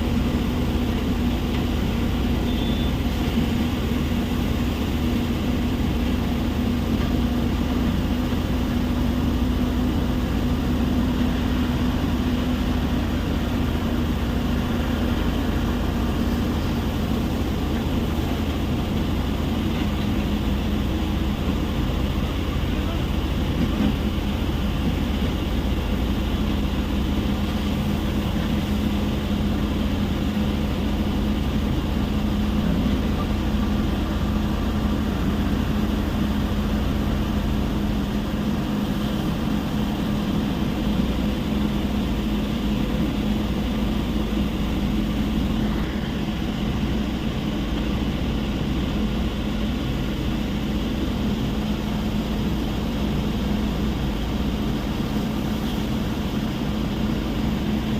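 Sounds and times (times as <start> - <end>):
steady low hum: 0.0 - 57.9.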